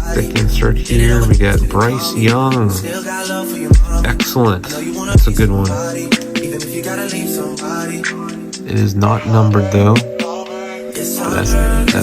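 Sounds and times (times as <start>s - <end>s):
background music with a beat: 0.0s - 12.0s.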